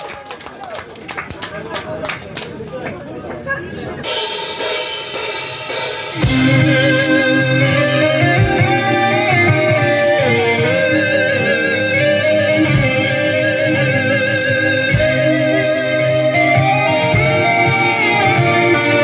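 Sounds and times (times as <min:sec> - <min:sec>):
heavy metal band playing: 0:04.0 - 0:19.0
electric guitar lead melody: 0:06.1 - 0:19.0.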